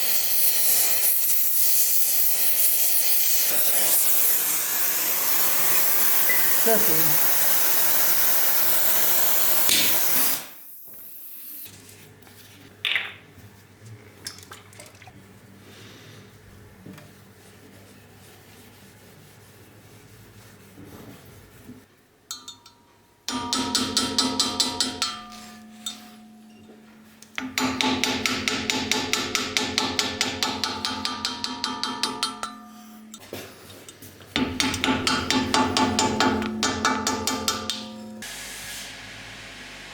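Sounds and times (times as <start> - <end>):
rapid hammer blows on metal: 23.3 - 25.4, 27.4 - 32.8, 34.4 - 38.0.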